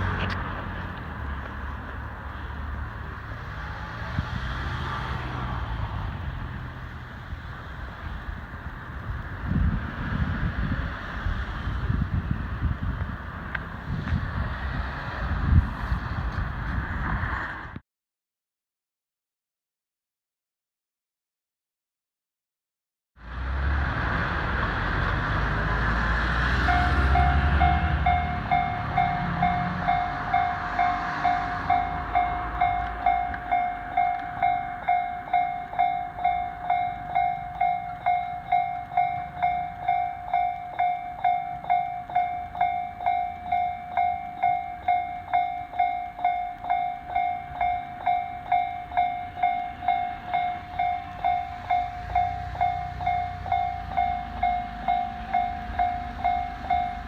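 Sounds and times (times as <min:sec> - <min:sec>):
train rumbling: 0:00.0 - 0:17.8, 0:23.2 - 0:57.0
crossing warning bell dinging: 0:26.6 - 0:57.0.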